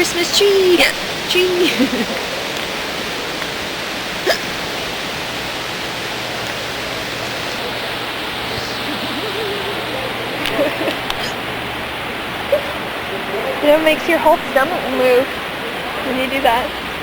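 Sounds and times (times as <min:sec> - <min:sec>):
waterfall rushing: 0:00.0 - 0:17.0
person hiccuping: 0:04.2 - 0:04.5, 0:11.1 - 0:11.4, 0:12.5 - 0:12.8.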